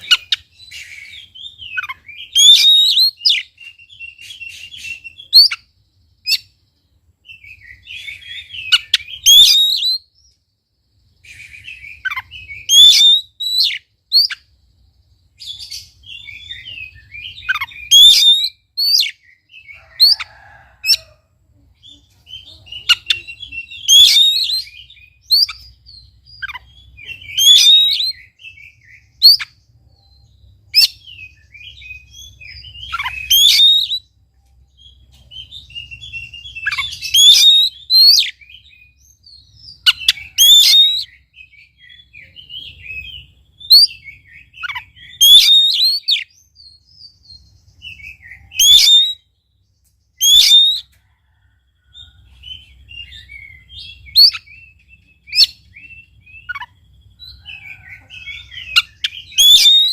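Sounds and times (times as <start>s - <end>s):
bird singing whistled phrases: 0.0s - 6.6s, 7.3s - 10.3s, 11.2s - 14.5s, 15.4s - 20.4s, 21.8s - 34.1s, 34.8s - 49.3s, 50.2s - 50.9s, 52.4s - 59.9s.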